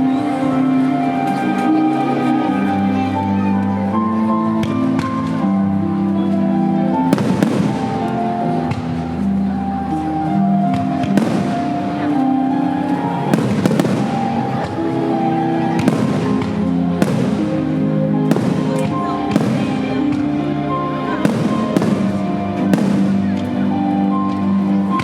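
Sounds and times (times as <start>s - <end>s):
music with long held notes: 0.0s - 25.0s
fireworks bursting: 7.0s - 25.0s.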